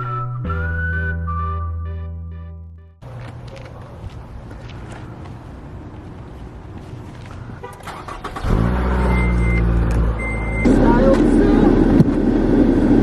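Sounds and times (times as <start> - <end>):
vehicle engine running: 3.0 - 13.0
short high-pitched beeps: 9.0 - 10.8.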